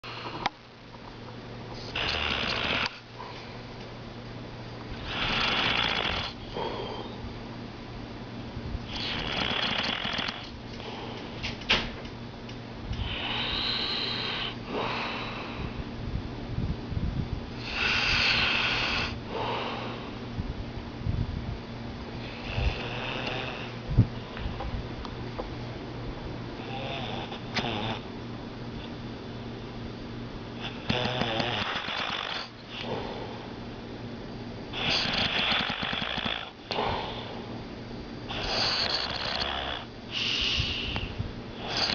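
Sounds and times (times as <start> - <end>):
snort: 1.8 - 3.4, 5.0 - 7.2, 8.9 - 11.0, 13.0 - 15.6, 17.6 - 20.1, 22.2 - 23.8, 26.6 - 28.1, 30.6 - 33.5, 34.7 - 37.4, 38.3 - 41.9
man snoring: 1.9 - 3.0, 5.0 - 7.1, 8.9 - 10.5, 13.0 - 15.4, 17.6 - 20.0, 22.2 - 23.8, 26.6 - 28.1, 30.6 - 33.4, 34.8 - 37.3, 38.3 - 40.8, 41.6 - 41.9
low hum: 6.2 - 9.1
soft breath: 40.1 - 41.9.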